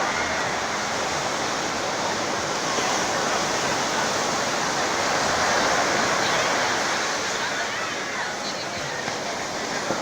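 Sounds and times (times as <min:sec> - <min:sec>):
ocean surf breaking on beach: 0:00.0 - 0:10.0.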